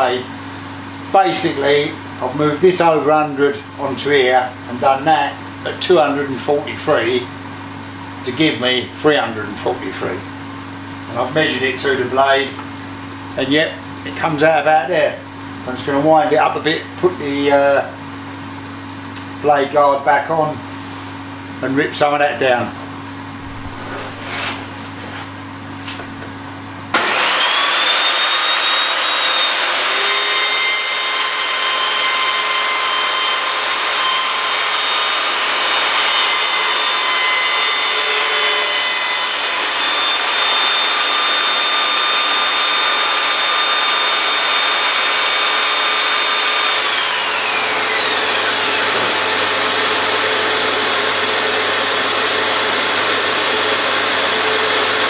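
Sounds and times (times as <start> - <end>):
table saw motor whine: 23.4 - 25.1, 26.9 - 55.0
rush of air: 23.4 - 25.3
saw ripping a board: 23.4 - 25.3, 27.0 - 55.0.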